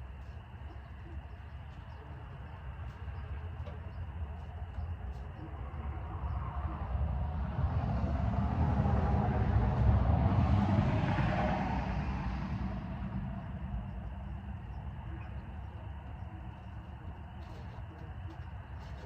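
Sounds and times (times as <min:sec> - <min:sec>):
vehicle driving past: 0:05.5 - 0:15.5.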